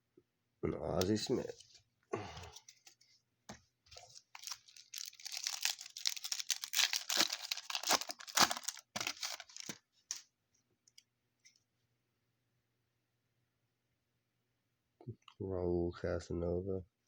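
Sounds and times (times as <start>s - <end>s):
foil wrapper tearing and crinkling: 3.9s - 10.2s.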